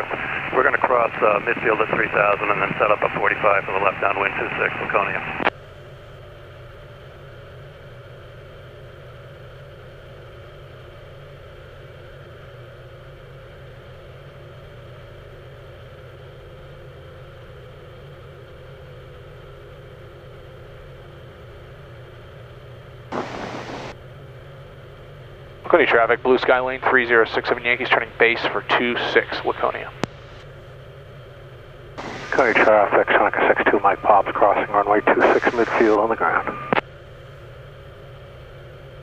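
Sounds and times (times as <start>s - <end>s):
aircraft piston engine drone: 0.0s - 5.5s, 23.1s - 24.0s, 25.1s - 36.8s
burst of radio noise: 23.1s - 24.0s, 26.8s - 30.0s, 32.0s - 36.8s
intercom hiss: 23.1s - 24.0s, 25.7s - 30.4s, 32.0s - 36.8s.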